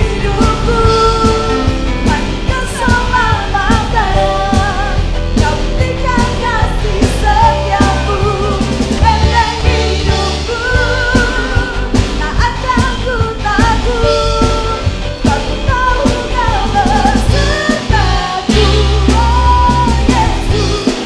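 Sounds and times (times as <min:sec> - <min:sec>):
person singing: 0:00.0 - 0:21.0
steady drum beat: 0:00.0 - 0:21.0
worship band playing: 0:00.0 - 0:21.0.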